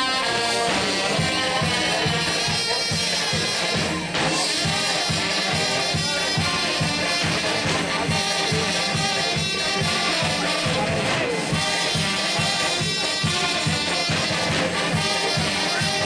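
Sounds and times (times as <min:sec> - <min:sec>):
brass music over quick beat: 0:00.0 - 0:16.0.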